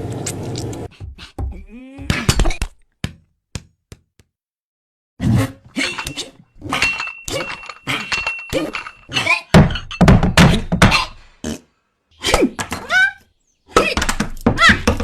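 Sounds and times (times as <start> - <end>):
comedy heavy thuds and knocks: 0.9 - 3.2, 9.5 - 11.2.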